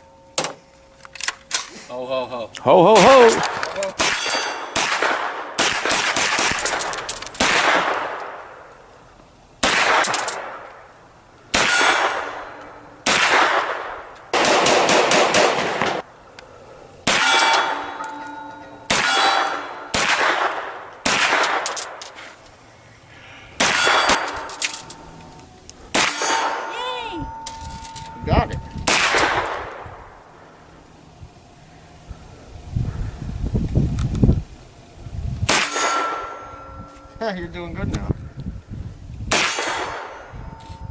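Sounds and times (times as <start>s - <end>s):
short metallic ring: 4.1s - 4.8s, 17.1s - 20.0s, 26.0s - 29.8s, 35.6s - 37.2s, 39.4s - 40.9s
gunshots with echo: 11.5s - 16.0s, 18.9s - 21.7s, 28.8s - 29.8s.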